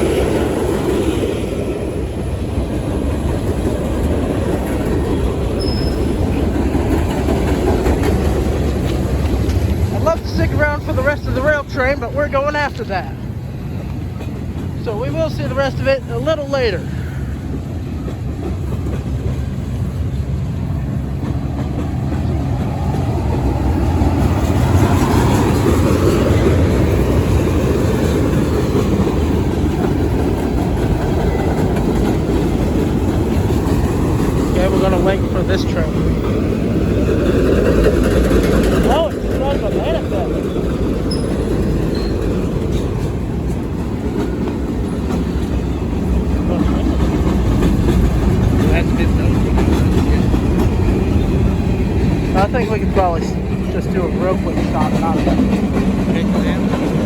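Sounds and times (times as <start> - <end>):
freight train rumbling past: 0.0 - 57.0.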